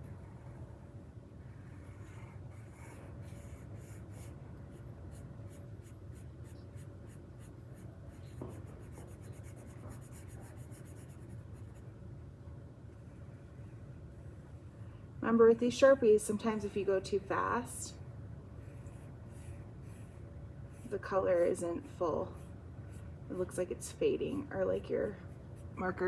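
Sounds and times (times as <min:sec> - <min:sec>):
low steady hum: 0:00.0 - 0:26.0
marker scratching on paper: 0:01.8 - 0:11.8, 0:18.6 - 0:26.0.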